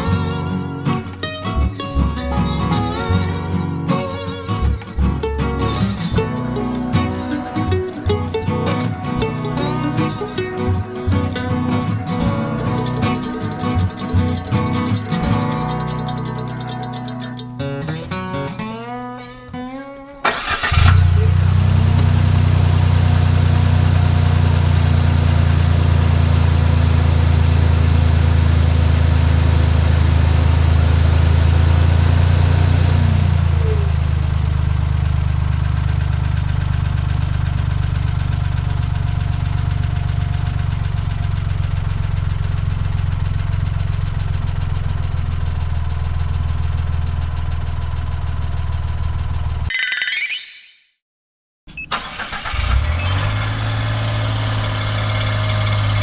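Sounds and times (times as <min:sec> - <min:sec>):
car engine idling: 0:00.0 - 0:17.4, 0:31.4 - 0:49.6.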